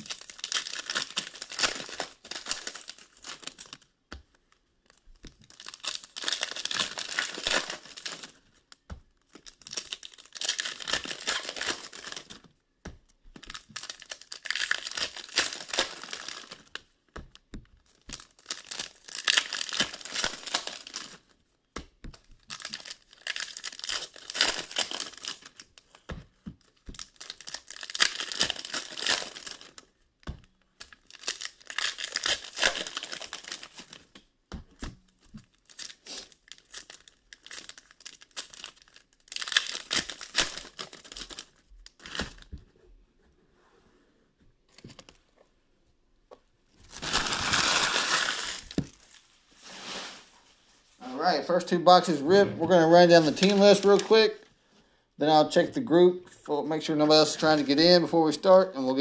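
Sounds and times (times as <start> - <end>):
card pack wrappers crinkling: 0.0 - 3.9, 4.9 - 12.5, 13.4 - 16.9, 17.8 - 21.4, 22.3 - 26.0, 26.6 - 30.0, 30.8 - 34.2, 35.4 - 42.5, 46.8 - 50.1, 50.9 - 54.4, 56.7 - 59.0.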